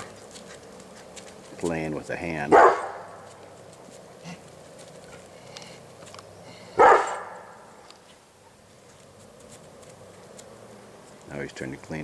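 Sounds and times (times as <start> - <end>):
faint clicks and rustles: 0.0 - 2.2, 2.8 - 12.0
dog barking: 2.5 - 3.2, 6.8 - 7.7.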